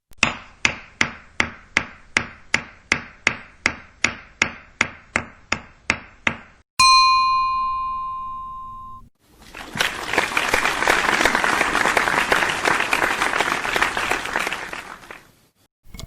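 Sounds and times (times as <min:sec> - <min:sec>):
glass ping: 0:06.8 - 0:09.1.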